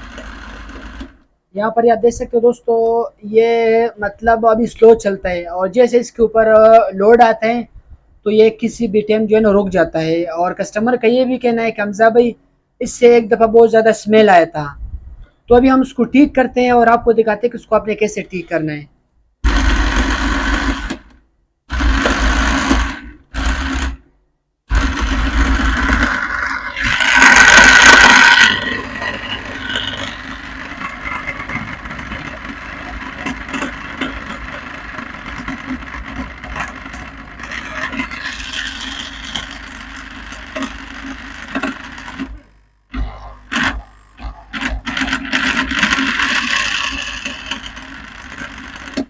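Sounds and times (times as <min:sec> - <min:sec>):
blender motor running: 0:00.0 - 0:01.2, 0:19.4 - 0:21.1, 0:21.7 - 0:24.0, 0:24.7 - 0:49.0.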